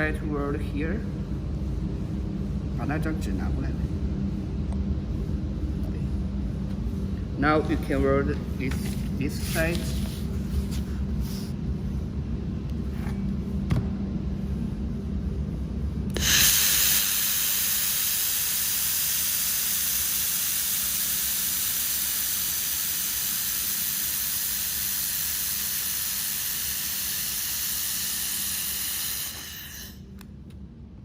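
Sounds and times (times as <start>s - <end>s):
steady low hum: 0.0s - 31.0s
shielding gas hissing: 7.0s - 11.9s, 16.1s - 30.2s.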